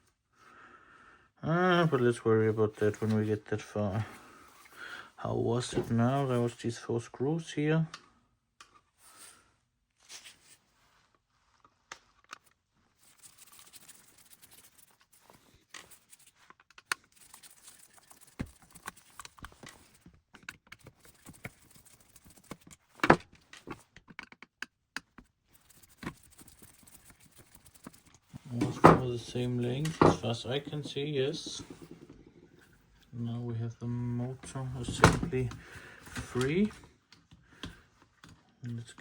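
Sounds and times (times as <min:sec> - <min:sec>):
screws clicking and scraping: 0:12.3 - 0:32.1
plastic housing being handled: 0:27.3 - 0:32.8.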